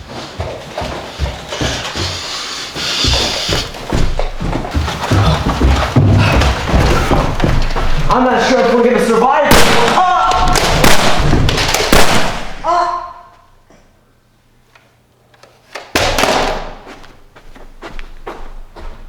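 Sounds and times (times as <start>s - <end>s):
loud bangs and crashes: 9.5s - 12.6s.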